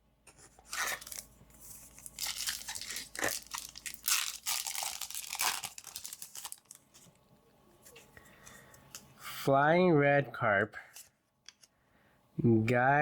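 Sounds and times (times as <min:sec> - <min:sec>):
foil wrapper crinkling and tearing: 0:00.6 - 0:07.0.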